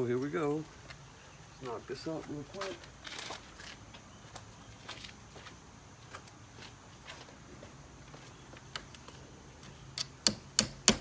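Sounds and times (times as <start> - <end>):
light clicks of nail and hammer: 9.9 - 11.0.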